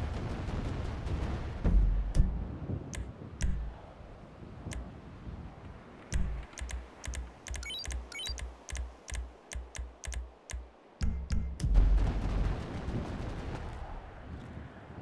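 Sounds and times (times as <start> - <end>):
pulsing low beat: 1.7 - 3.8, 6.2 - 8.4, 10.5 - 12.6
sharp clicks: 3.0 - 3.8, 4.7 - 4.9, 6.1 - 11.4
rising electronic beeps: 7.5 - 8.4.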